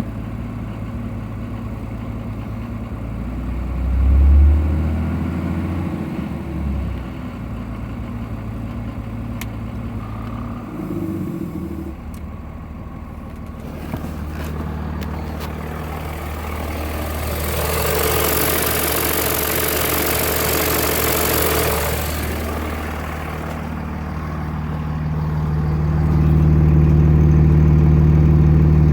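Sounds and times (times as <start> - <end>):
diesel engine high idle: 0.0 - 4.4, 5.1 - 28.9.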